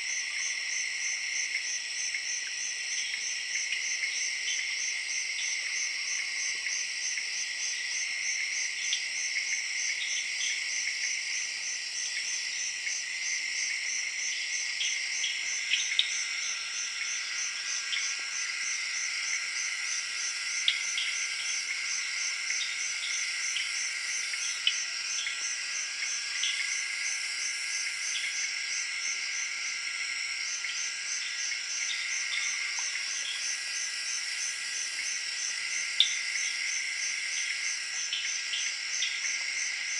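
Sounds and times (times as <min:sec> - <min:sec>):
continuous lower drone: 0:12.1 - 0:39.9.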